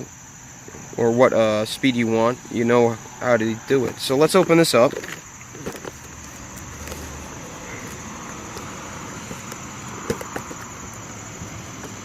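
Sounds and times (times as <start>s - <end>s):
cardboard rustling scrape: 3.8s - 12.0s.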